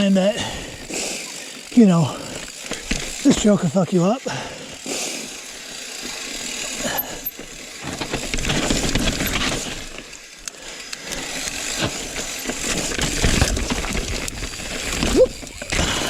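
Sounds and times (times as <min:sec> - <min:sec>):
bike tyres rumbling: 0:00.0 - 0:16.0
chain and frame clattering: 0:06.0 - 0:10.2, 0:11.0 - 0:16.0.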